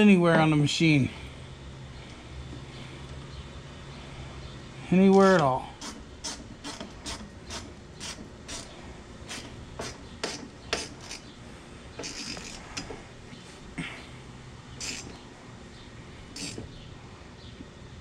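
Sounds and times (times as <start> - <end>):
faint metal scraping: 5.7 - 13.6
hand tool clicking: 16.4 - 16.6.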